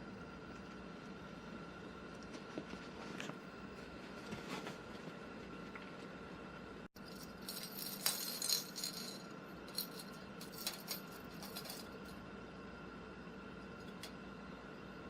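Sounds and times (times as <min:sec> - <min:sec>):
cat toys rattling and clicking: 0:07.0 - 0:12.1.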